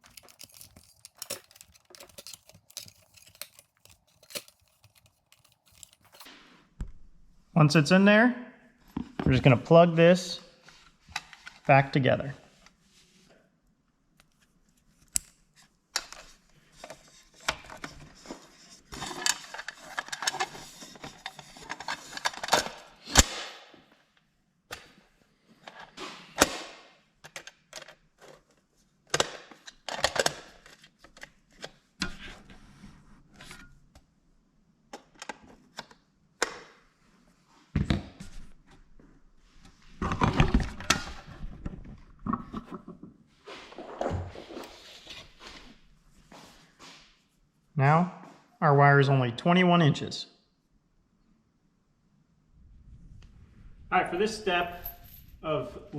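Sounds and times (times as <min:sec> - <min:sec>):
plastic parts clicking and knocking: 0:00.0 - 0:06.3, 0:27.2 - 0:28.4, 0:29.1 - 0:31.8.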